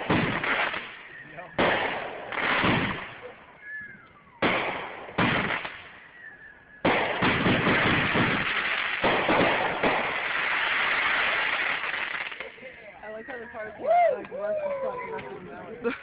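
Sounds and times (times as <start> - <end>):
fireworks crackling: 0.0 - 3.8, 4.4 - 13.6
firework bangs: 0.0 - 12.6
firework whistle: 2.5 - 7.9.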